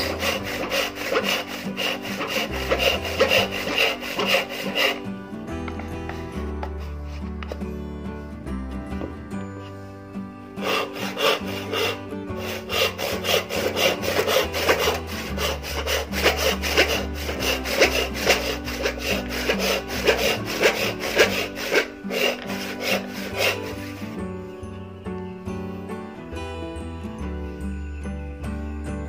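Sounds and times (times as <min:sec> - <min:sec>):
hand saw cutting wood: 0:00.0 - 0:05.2, 0:10.6 - 0:24.2.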